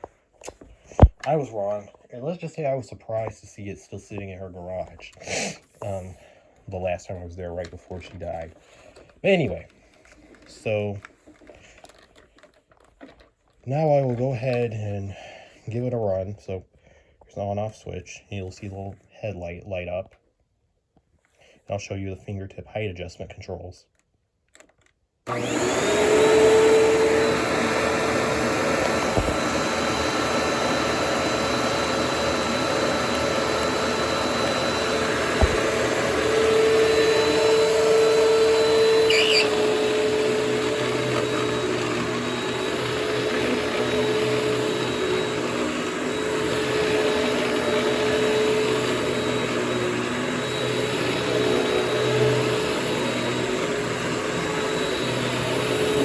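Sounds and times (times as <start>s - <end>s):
vacuum cleaner motor whining: 0.5s - 1.9s, 4.1s - 6.1s, 6.8s - 14.8s, 25.3s - 56.0s.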